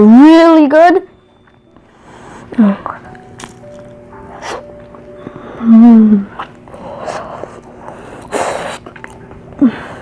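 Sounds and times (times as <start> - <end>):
faint background music: 0.0 - 10.0
man humming with mouth full: 5.3 - 7.7.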